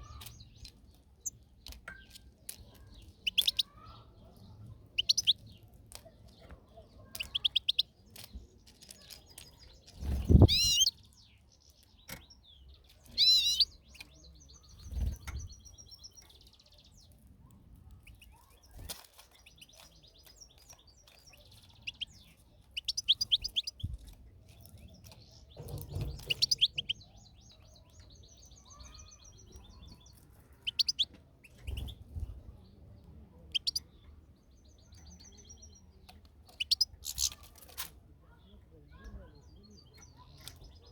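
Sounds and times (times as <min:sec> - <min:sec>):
goldfinch twittering: 0:03.2 - 0:03.6, 0:05.0 - 0:05.4, 0:10.1 - 0:10.9, 0:13.1 - 0:13.8, 0:22.8 - 0:23.9, 0:25.9 - 0:27.1, 0:33.5 - 0:33.8.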